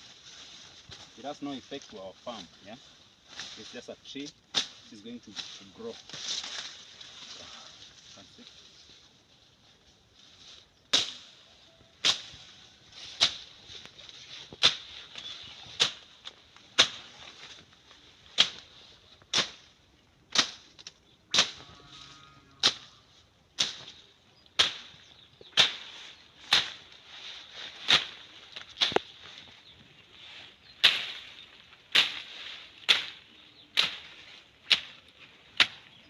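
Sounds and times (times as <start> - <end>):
blade swishing through grass: 12.0 - 17.6, 18.2 - 20.7, 23.6 - 24.0, 24.6 - 36.0.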